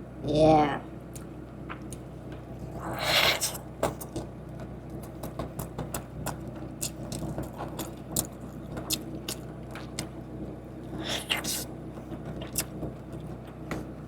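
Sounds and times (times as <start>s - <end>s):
steady low hum: 0.0s - 14.0s
crunchy chewing: 1.2s - 4.3s, 5.0s - 10.2s, 10.9s - 12.9s.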